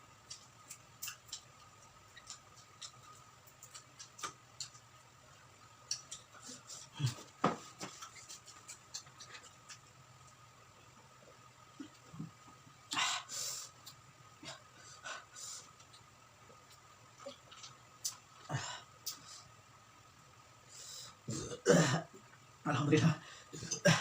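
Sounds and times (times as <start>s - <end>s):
chewing and crunching fried food: 0.2s - 10.8s, 15.4s - 19.4s.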